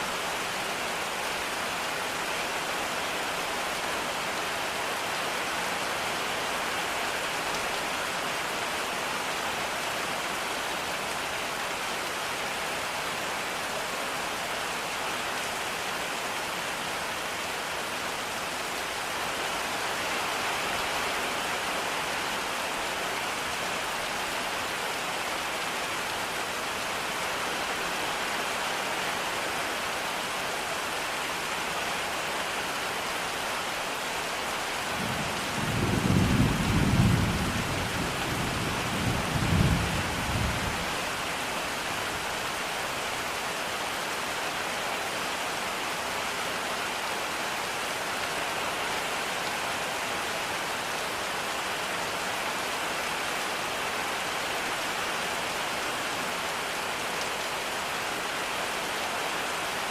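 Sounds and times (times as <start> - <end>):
steady rain falling: 0.0 - 59.9
low roll of thunder: 35.0 - 40.8.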